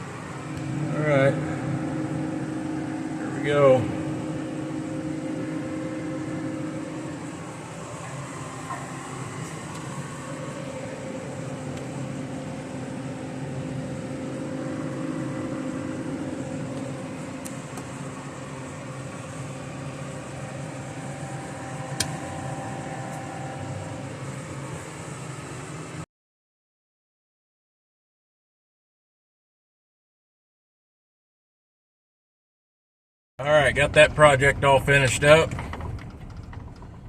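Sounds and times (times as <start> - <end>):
vehicle engine and road noise: 0.0 - 26.0, 33.5 - 37.0
sharp click: 22.0 - 22.2.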